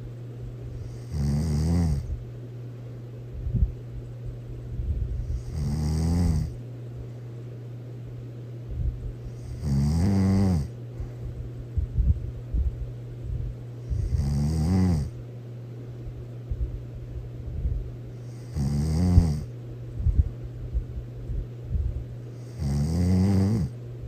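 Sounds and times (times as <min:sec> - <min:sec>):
steady low hum: 0:00.0 - 0:24.0
loud snoring: 0:00.8 - 0:02.1, 0:05.3 - 0:06.6, 0:09.4 - 0:10.8, 0:13.9 - 0:15.2, 0:18.3 - 0:19.5, 0:22.4 - 0:23.8.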